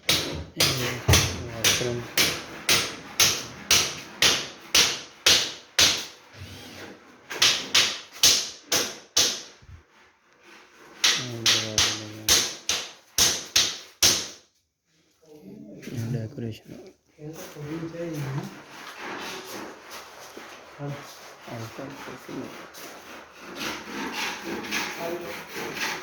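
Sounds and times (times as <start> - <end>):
hammering: 0.0 - 6.2, 7.3 - 9.7, 11.0 - 14.4, 21.8 - 26.0.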